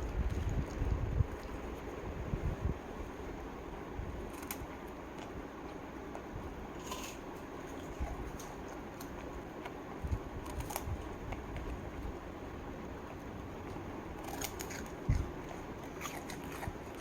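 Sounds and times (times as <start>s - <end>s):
steady background noise: 0.0s - 17.0s
dog chewing crunchy chips: 6.7s - 12.1s, 12.9s - 17.0s.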